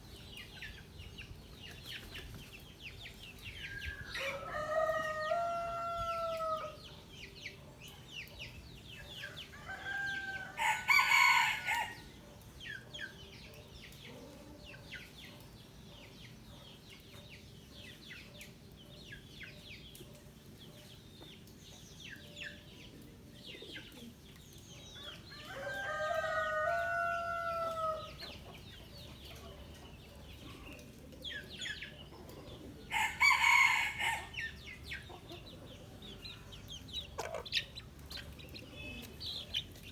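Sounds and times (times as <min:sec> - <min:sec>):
chickens clucking and chirping: 0:00.0 - 0:39.9
roosters crowing: 0:04.0 - 0:06.8, 0:09.3 - 0:12.2, 0:25.2 - 0:28.2, 0:32.9 - 0:34.6.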